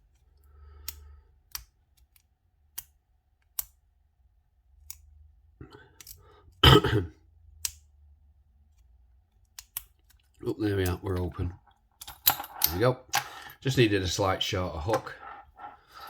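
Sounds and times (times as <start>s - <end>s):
lock pick metallic clicks: 12.0s - 13.3s.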